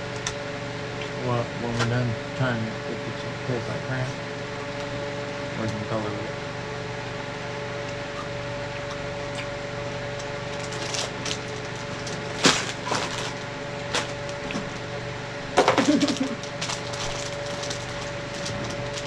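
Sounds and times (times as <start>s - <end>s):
fan hum: 0.0s - 19.0s
snack packaging crinkling: 10.2s - 14.8s, 15.6s - 19.0s.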